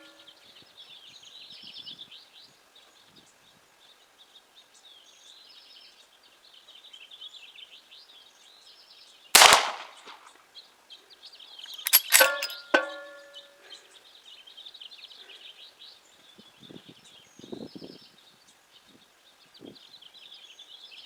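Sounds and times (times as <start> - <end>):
birds chirping: 0.0 - 0.4, 11.4 - 14.2
rifle shot with echo: 9.4 - 10.3.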